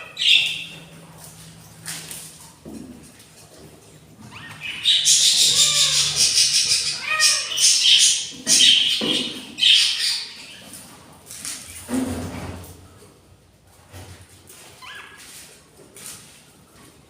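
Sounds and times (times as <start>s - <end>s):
budgerigar chirps: 4.7s - 9.0s
budgerigars raspy hissing calls: 4.9s - 8.8s.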